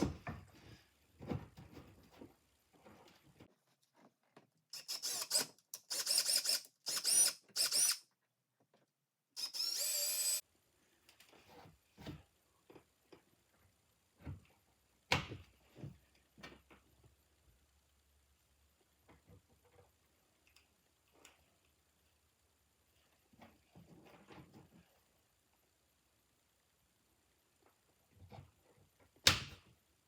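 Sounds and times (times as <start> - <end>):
power drill motor whining: 4.8 - 8.0, 9.4 - 10.4.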